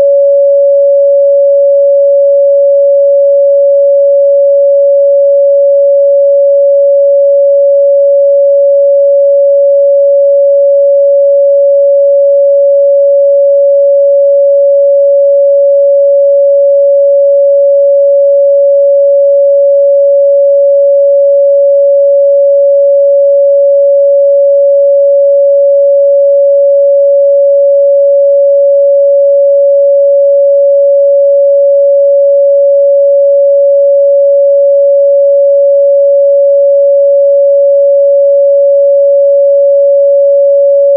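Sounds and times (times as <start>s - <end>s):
sine-wave test tone: 0.0s - 40.9s.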